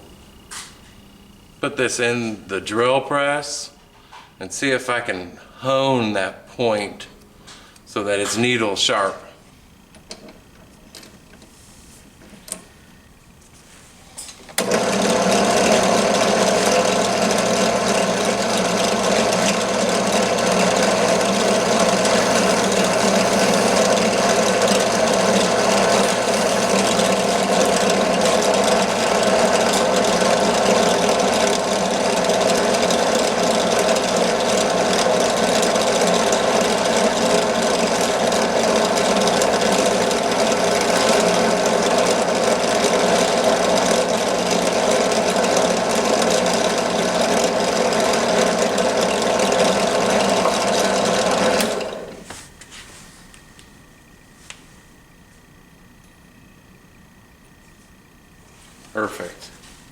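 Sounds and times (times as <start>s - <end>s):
drill press running: 14.4s - 52.4s.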